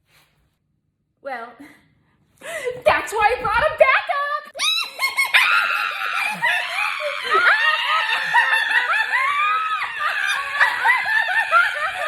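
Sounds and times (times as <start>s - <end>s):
women laughing and shrieking: 4.5s - 12.0s.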